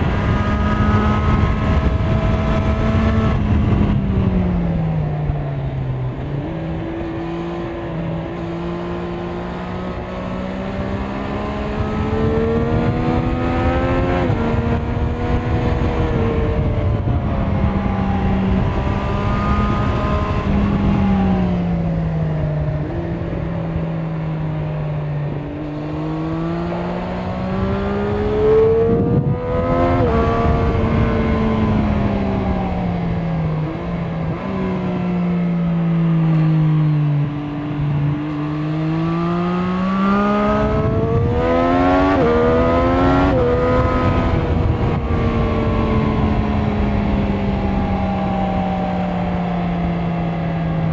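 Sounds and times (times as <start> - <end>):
motorcycle engine accelerating: 0.0 - 50.9.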